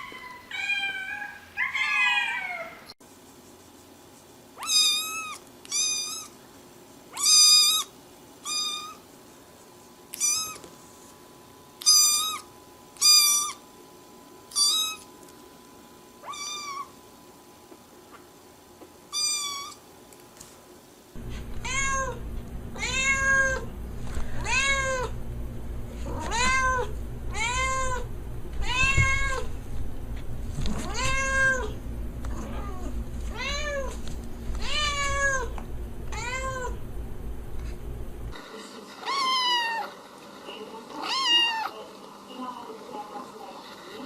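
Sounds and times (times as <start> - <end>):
cat meowing: 0.0 - 2.9, 4.6 - 6.4, 7.2 - 9.0, 10.1 - 10.6, 11.8 - 13.6, 14.5 - 15.1, 16.2 - 16.9, 19.1 - 19.8, 21.3 - 22.2, 22.8 - 23.6, 24.4 - 25.1, 26.1 - 28.0, 28.6 - 29.5, 30.8 - 34.0, 34.6 - 36.8, 39.0 - 39.9, 41.0 - 41.7
steady low rumble: 21.2 - 38.4.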